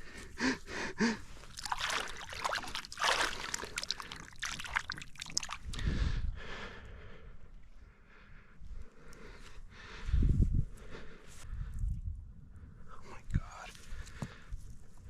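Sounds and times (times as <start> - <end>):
water splashing and sloshing: 1.0 - 5.9.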